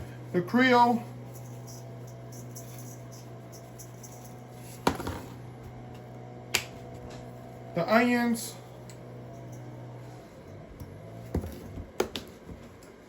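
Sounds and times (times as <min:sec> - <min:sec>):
low hum: 0:00.0 - 0:11.9
seasoning shaker rustling: 0:00.9 - 0:04.9.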